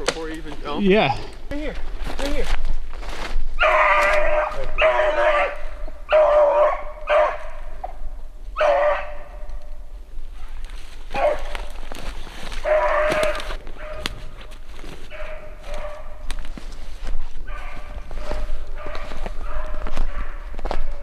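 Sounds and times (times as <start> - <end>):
puppy howling yelps: 3.6 - 7.6, 8.6 - 9.4.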